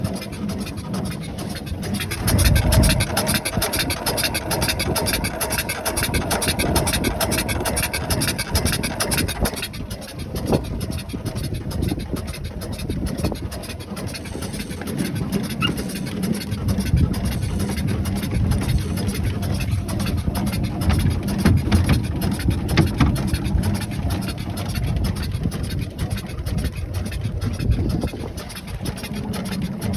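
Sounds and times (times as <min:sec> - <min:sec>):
steam engine beating: 0:13.0 - 0:24.4
low rumble: 0:14.3 - 0:29.9.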